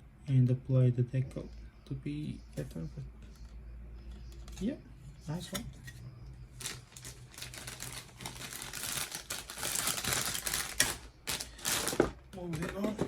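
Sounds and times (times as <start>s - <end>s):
plastic packaging rustling: 6.5s - 13.0s.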